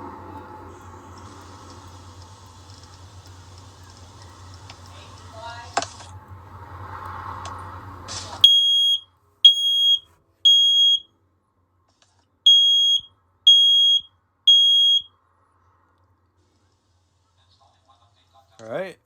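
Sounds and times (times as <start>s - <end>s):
smoke alarm beeping: 8.4s - 11.1s, 12.5s - 15.1s.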